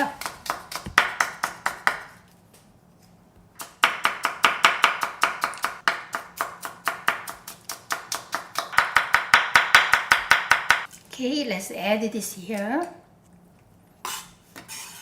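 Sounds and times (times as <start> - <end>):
knife chopping on cutting board: 0.0 - 2.1, 3.4 - 10.9.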